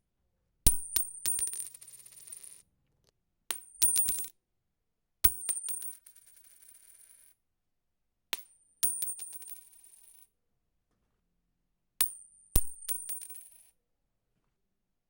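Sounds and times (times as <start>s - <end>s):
coin bouncing on hard surface: 0.7s - 2.6s, 3.5s - 4.3s, 5.2s - 7.4s, 8.3s - 10.3s, 12.0s - 13.8s.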